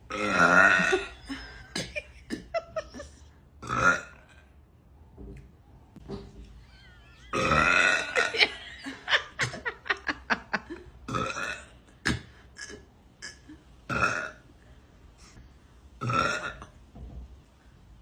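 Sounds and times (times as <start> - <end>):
woman burping: 0.1 - 4.3, 6.0 - 10.2, 11.1 - 14.4, 16.0 - 16.7.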